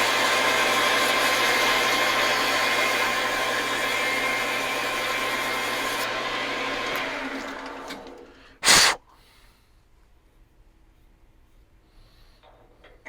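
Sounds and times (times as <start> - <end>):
metal lathe motor whine: 0.0 - 8.3.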